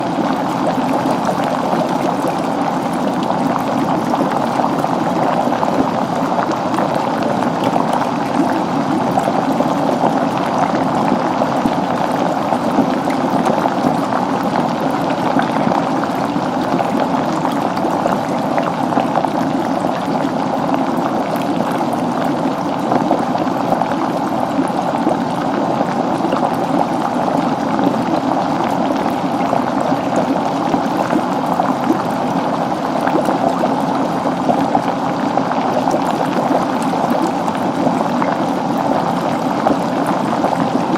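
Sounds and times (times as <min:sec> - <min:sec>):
geyser water boiling and splashing: 0:00.0 - 0:40.9.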